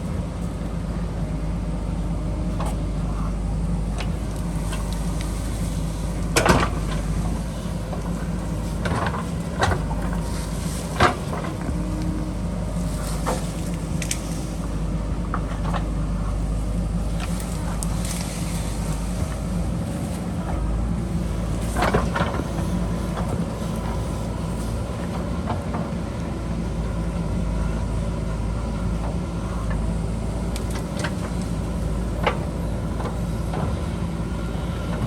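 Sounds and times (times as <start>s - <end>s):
diesel engine running: 0.0s - 35.0s
metal clanks and knocks: 6.2s - 14.4s.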